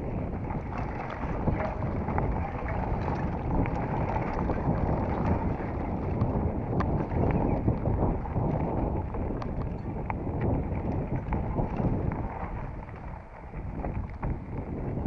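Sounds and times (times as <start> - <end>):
wind rushing over microphone: 0.0 - 15.0.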